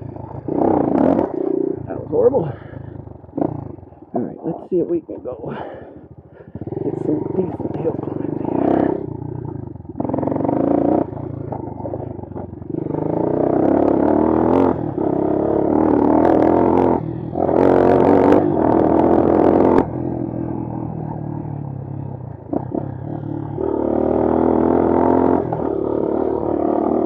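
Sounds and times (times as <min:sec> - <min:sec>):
motorcycle engine revving: 0:00.0 - 0:27.0
motorcycle knocks and rattles: 0:09.1 - 0:13.2.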